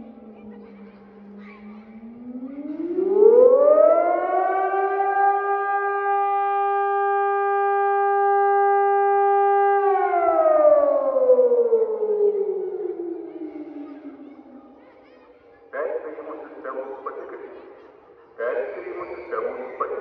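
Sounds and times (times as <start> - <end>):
warning siren: 0.0 - 14.8, 18.4 - 20.0.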